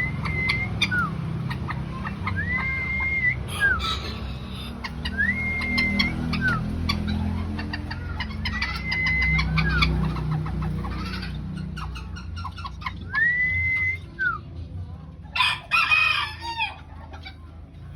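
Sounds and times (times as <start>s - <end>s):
chicken clucking: 0.0s - 17.9s
long whistled chicken calls: 2.3s - 6.6s
rooster crowing: 15.4s - 16.8s.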